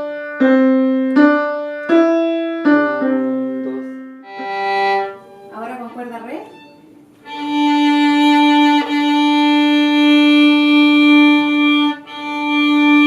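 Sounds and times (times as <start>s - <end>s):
violin open string bowed: 4.2s - 13.0s.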